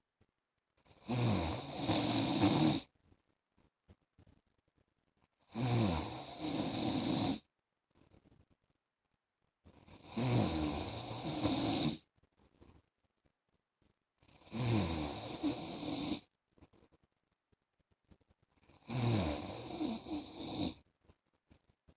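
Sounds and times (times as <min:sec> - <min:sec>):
man snoring: 0:01.0 - 0:02.8, 0:05.5 - 0:07.4, 0:10.0 - 0:12.0, 0:14.4 - 0:16.2, 0:18.8 - 0:20.8.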